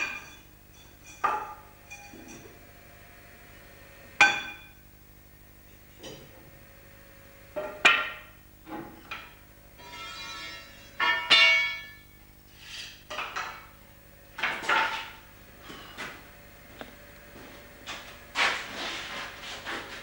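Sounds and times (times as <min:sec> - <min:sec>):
metal clanks and knocks: 0:13.1 - 0:13.7, 0:14.4 - 0:16.2.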